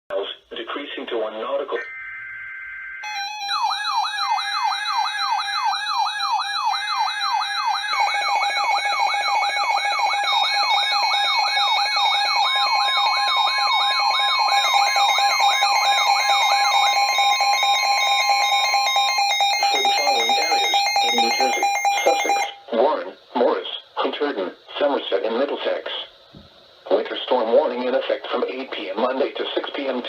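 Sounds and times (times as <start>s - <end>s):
steady higher tone: 1.8s - 5.7s
electronic alert alarm sweeping down: 1.8s - 22.7s.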